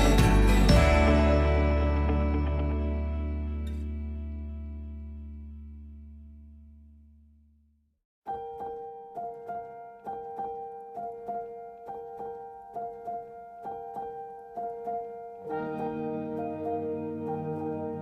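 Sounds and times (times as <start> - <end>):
gentle piano piece: 0.0 - 5.6, 8.3 - 18.0
low sustained chords: 0.0 - 7.0.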